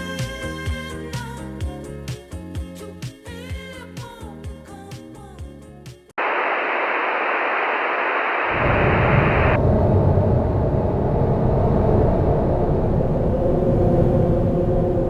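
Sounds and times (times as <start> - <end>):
music: 0.0 - 6.2
loud steady rushing noise: 6.2 - 15.0
low rumble: 8.2 - 15.0.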